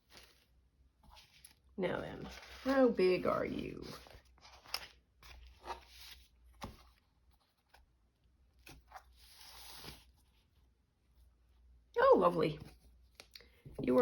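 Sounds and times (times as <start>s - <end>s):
paper rustling and crinkling: 0.0s - 8.0s.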